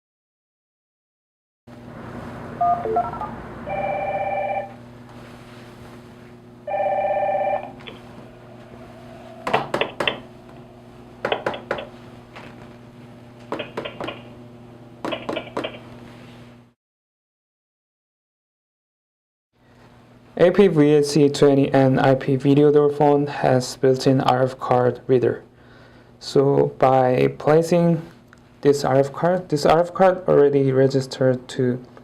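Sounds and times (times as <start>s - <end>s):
steady electrical hum: 1.7s - 16.8s, 19.6s - 32.0s
door phone ring tones: 2.6s - 4.7s, 6.7s - 7.8s.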